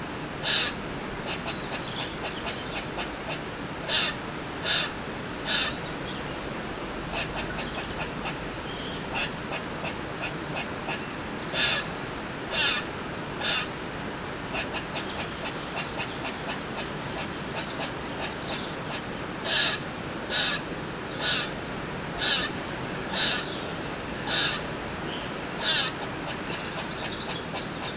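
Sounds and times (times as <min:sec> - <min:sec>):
squirrel chirping clicks: 0:00.4 - 0:04.9, 0:07.1 - 0:08.4, 0:14.5 - 0:19.8, 0:25.6 - 0:27.9
squirrel barking calls: 0:00.4 - 0:06.2, 0:07.0 - 0:27.9.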